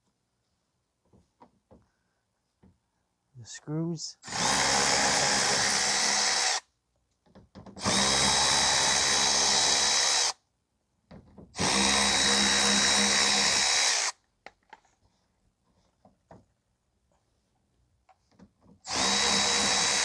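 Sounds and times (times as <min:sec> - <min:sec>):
power drill running: 0:04.3 - 0:06.6, 0:07.8 - 0:10.3, 0:11.6 - 0:14.1, 0:18.9 - 0:20.0.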